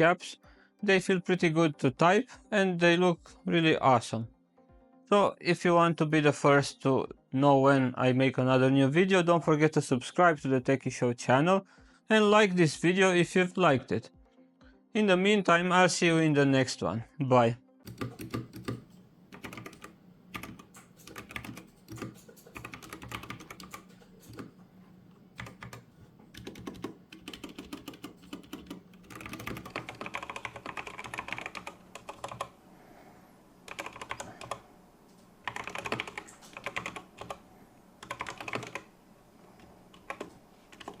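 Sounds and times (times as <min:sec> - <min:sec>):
mechanical keyboard key clacks: 0:17.9 - 0:32.5.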